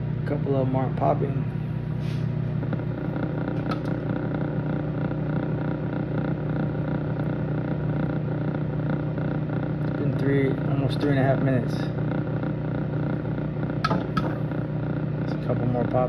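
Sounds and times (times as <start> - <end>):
microwave oven humming: 0.0 - 16.0
popcorn kernels popping: 2.7 - 6.2, 13.8 - 14.5.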